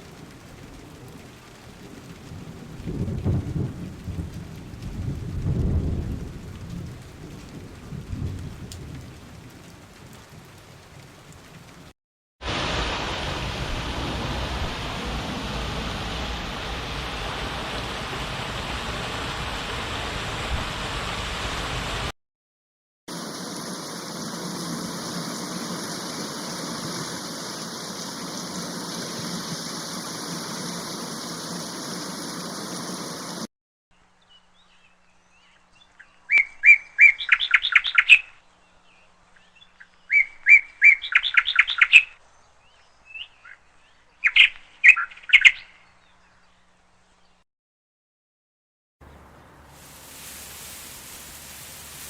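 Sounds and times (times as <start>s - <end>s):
rushing water: 0.0s - 4.7s, 9.5s - 22.1s, 23.1s - 33.5s, 49.0s - 52.0s
songbird trilling: 35.4s - 38.4s, 39.4s - 42.2s.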